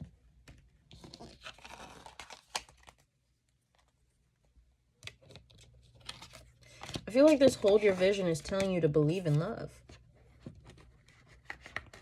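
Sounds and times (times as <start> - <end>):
cards rustling and sliding: 0.9 - 3.0, 5.1 - 12.0.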